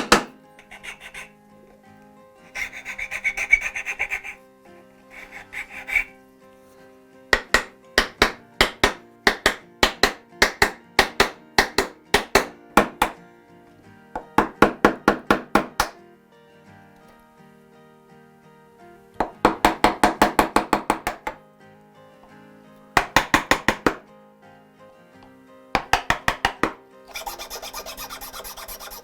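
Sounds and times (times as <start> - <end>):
sharp taps on wood: 0.0 - 0.4, 7.4 - 13.2, 14.2 - 16.0, 19.2 - 21.4, 23.0 - 24.0, 25.8 - 26.8
hand tool rasping wood: 0.0 - 1.3, 2.4 - 6.1, 25.8 - 29.0
background music: 0.0 - 29.0.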